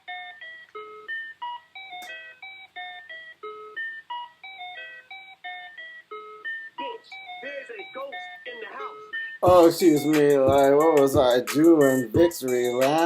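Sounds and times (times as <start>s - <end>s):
hip-hop beat with looping melody: 6.6s - 13.0s.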